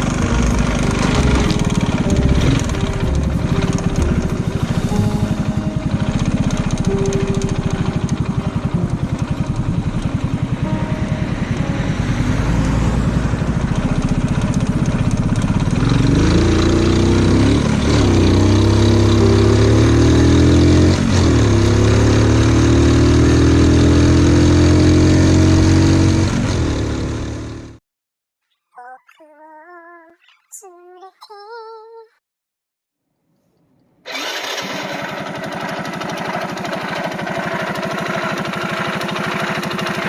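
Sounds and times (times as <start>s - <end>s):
motorcycle engine revving: 0.0s - 27.8s, 34.1s - 40.0s.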